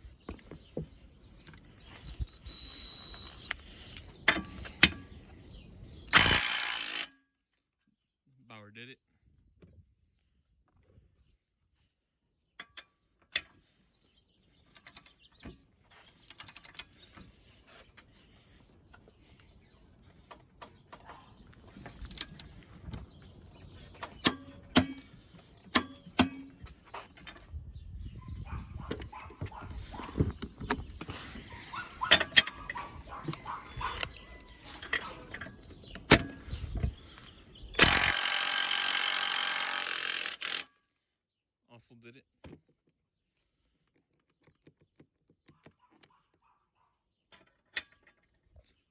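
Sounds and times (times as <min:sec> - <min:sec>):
impact wrench running: 0:02.2 - 0:03.5, 0:06.1 - 0:07.1, 0:37.8 - 0:40.7
ratchet clicking: 0:06.1 - 0:07.1, 0:16.3 - 0:16.8, 0:37.8 - 0:40.7
metal hand tools clicking and knocking: 0:24.0 - 0:26.6, 0:37.8 - 0:40.7.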